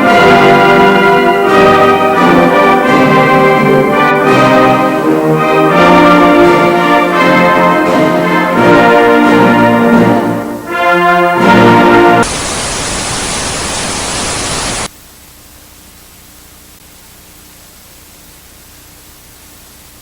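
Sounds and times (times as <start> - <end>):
brass-led orchestral music: 0.0 - 12.2
static hiss: 12.0 - 15.0.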